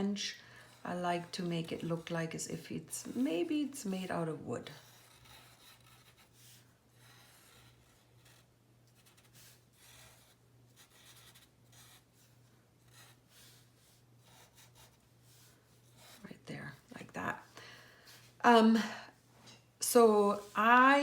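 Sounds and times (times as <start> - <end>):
pen scratching on paper: 1.1 - 16.4.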